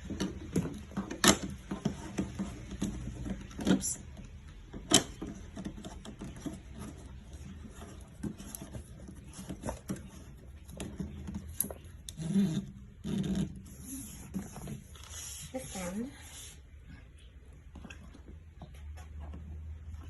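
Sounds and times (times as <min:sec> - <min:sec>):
plastic parts clicking and rubbing: 0:00.0 - 0:15.1.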